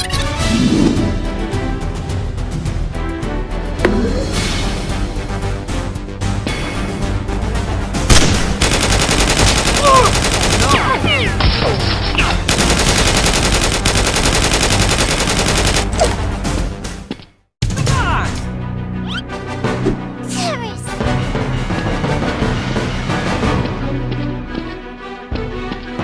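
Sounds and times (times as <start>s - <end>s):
background music: 0.0s - 26.0s
automatic gunfire: 8.1s - 11.4s, 12.4s - 16.2s.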